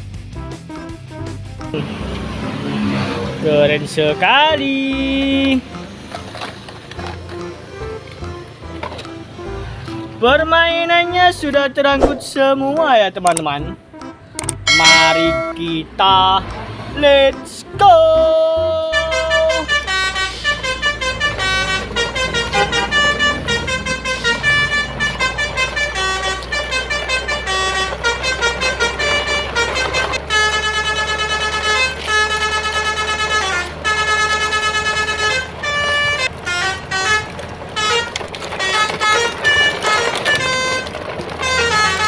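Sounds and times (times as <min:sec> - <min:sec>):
musical vehicle horn melody: 0:14.6 - 0:15.6, 0:18.8 - 0:42.0.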